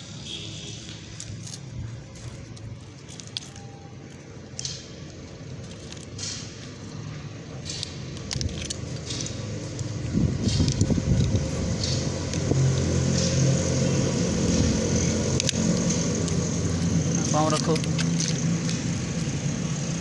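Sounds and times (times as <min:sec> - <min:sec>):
metallic clicks: 0:02.3 - 0:19.8
steady low rumble: 0:06.5 - 0:20.0.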